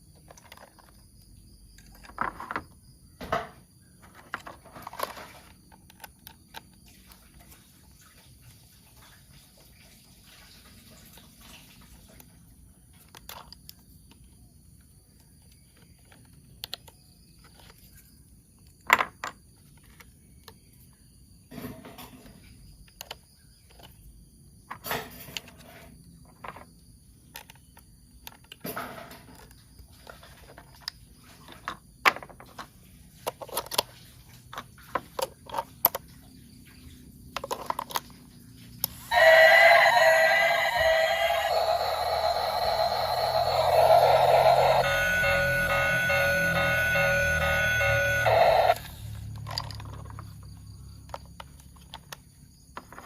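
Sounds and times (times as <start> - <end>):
toy train parts clicking and knocking: 0.0 - 2.8, 4.0 - 6.9, 13.0 - 18.0, 26.3 - 36.0, 37.3 - 53.0.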